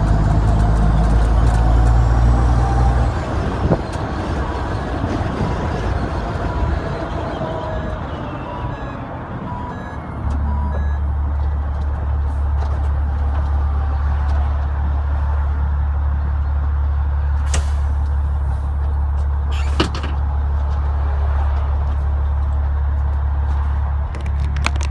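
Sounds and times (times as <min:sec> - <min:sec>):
diesel truck engine slowing to idle: 0:00.0 - 0:19.5
sharp clicks: 0:03.9 - 0:11.0
short warning tone beeps: 0:04.4 - 0:11.1.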